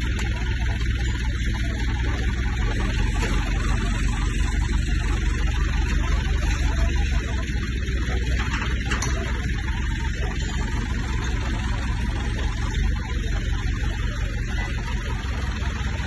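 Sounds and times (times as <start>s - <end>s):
diesel generator running: 0.0s - 16.0s.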